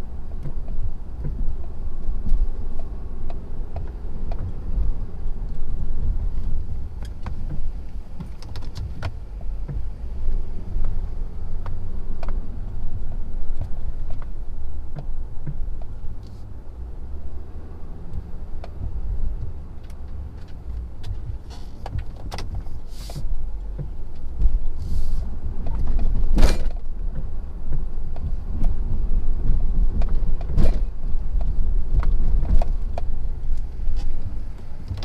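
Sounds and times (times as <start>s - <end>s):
diesel pickup engine rumble: 0.0s - 35.0s
plow blade thumps: 18.1s - 35.0s
short hisses: 24.8s - 25.2s.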